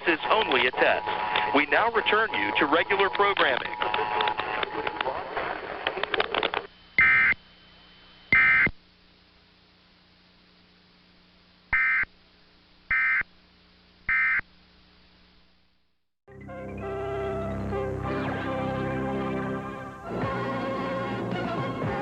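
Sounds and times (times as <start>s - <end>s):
music: 0.0s - 5.2s, 16.3s - 22.0s
buzzy two-tone data bursts: 7.0s - 7.4s, 8.3s - 8.7s.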